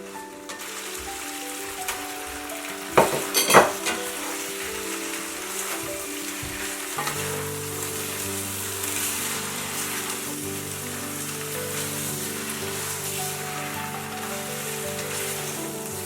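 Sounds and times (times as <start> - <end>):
background music: 0.0 - 16.0
noodles sizzling in a pan: 0.0 - 16.0.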